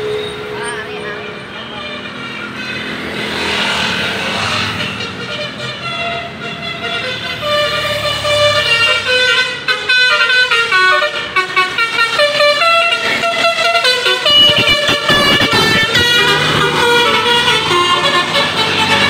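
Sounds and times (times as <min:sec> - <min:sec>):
musical air horn playing tune: 0:04.8 - 0:19.0.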